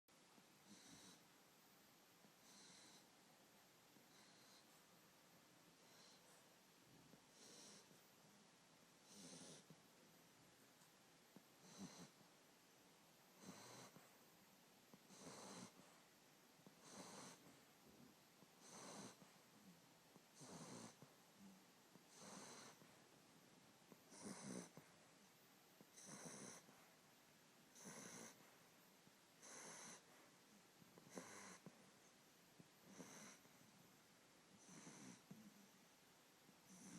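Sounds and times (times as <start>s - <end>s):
man snoring faintly: 0.6s - 1.3s, 2.3s - 3.2s, 4.0s - 4.9s, 7.0s - 8.2s, 9.0s - 9.9s, 11.6s - 12.3s, 13.3s - 14.2s, 14.9s - 16.0s, 16.6s - 23.0s, 23.9s - 25.0s, 25.8s - 26.9s, 27.7s - 28.6s, 29.4s - 31.8s, 32.8s - 33.8s, 34.5s - 35.8s, 36.6s - 36.9s.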